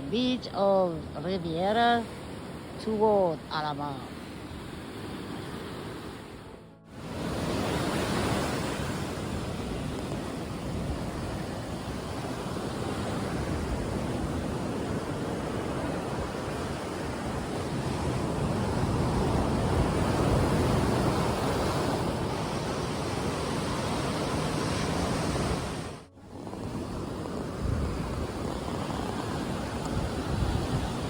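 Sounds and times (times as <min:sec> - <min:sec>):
surf washing onto beach: 0:03.8 - 0:31.0
wind on microphone: 0:07.0 - 0:31.0.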